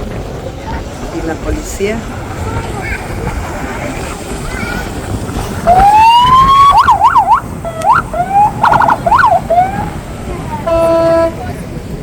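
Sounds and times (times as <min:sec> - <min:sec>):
police siren wailing and yelping: 0:05.6 - 0:10.0
steady horn tone: 0:10.6 - 0:11.6.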